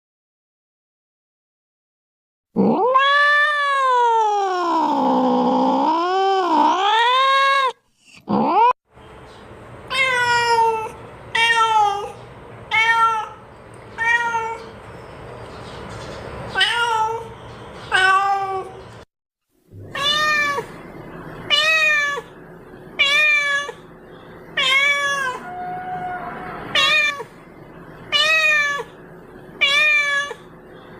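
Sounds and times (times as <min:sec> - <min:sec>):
cat meowing: 0:02.6 - 0:08.7, 0:09.9 - 0:13.4, 0:14.0 - 0:14.7, 0:19.8 - 0:20.8, 0:21.5 - 0:22.3, 0:23.0 - 0:23.9, 0:24.6 - 0:27.3, 0:28.1 - 0:29.0, 0:29.6 - 0:30.5.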